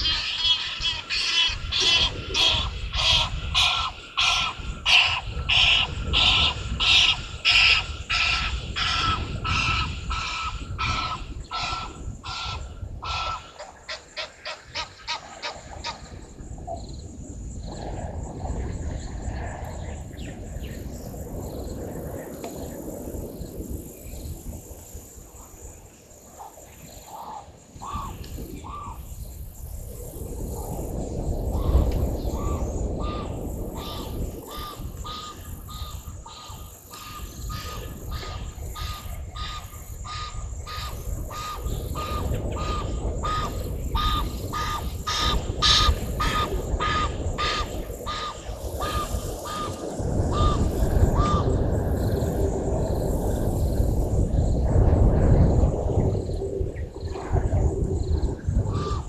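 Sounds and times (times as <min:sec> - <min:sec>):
repeated animal call: 0:00.0 - 0:16.0.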